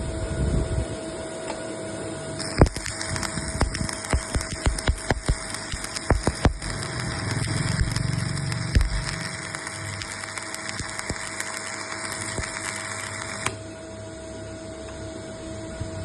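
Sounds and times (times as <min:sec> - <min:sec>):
sharp clicks and knocks: 0:02.4 - 0:11.6
welding arc hissing: 0:02.4 - 0:13.6.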